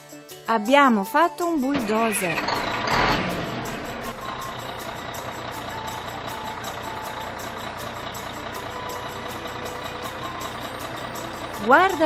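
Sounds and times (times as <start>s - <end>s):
bulldozer engine running: 1.6s - 12.0s.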